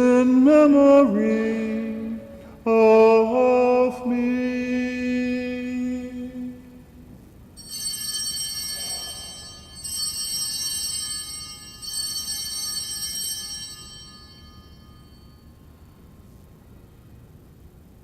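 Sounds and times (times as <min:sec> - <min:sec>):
altar bells ringing: 0:07.6 - 0:16.5.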